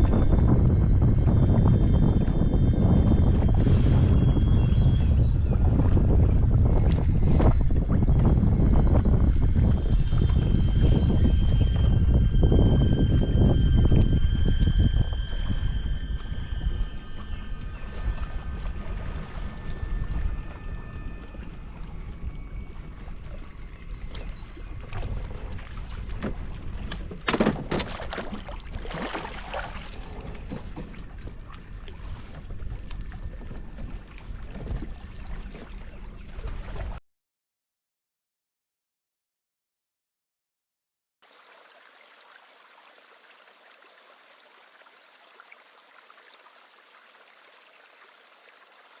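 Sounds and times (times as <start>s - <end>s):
wind rumble on microphone: 0.0s - 37.0s
faint rush of water: 41.2s - 49.0s.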